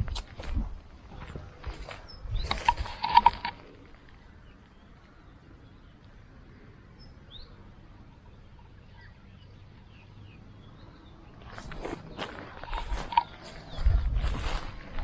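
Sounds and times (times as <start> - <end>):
outdoor background noise: 0.0 - 15.0.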